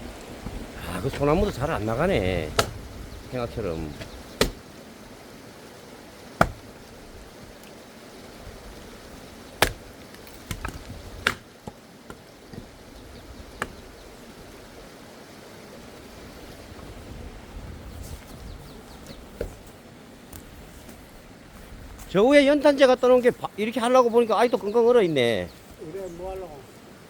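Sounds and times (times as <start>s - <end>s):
axe splitting firewood: 2.3s - 2.8s, 3.9s - 4.8s, 6.3s - 6.9s, 9.5s - 12.8s.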